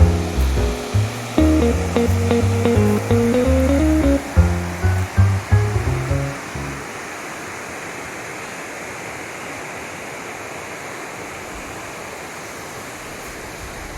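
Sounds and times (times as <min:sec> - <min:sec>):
music ending: 0:00.0 - 0:06.9.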